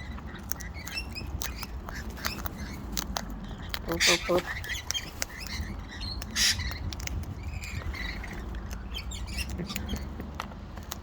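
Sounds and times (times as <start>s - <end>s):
beak nibbling and clicking: 0.0s - 11.0s.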